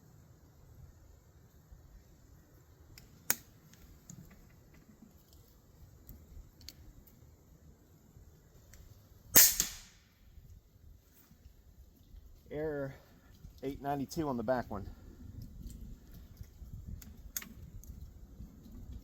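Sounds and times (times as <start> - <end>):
air rifle shot: 9.4 - 10.1.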